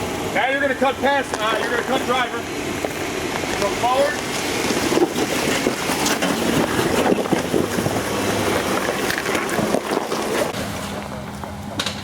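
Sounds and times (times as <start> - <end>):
vehicle engine running low: 0.0 - 12.0
tyres crunching on rock: 2.8 - 12.0.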